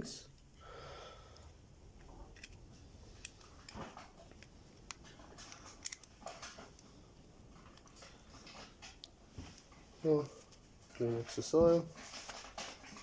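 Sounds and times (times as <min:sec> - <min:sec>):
small metal clicks: 0:03.2 - 0:06.9.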